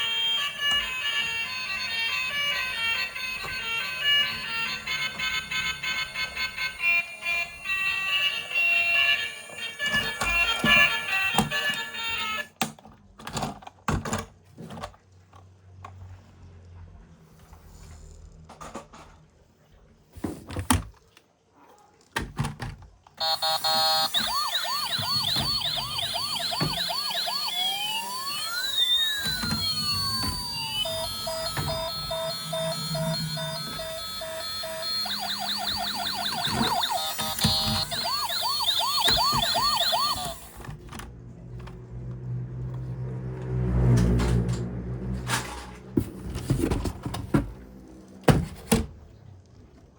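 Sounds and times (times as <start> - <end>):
toy electronic siren: 0.0 - 12.5, 23.2 - 40.7.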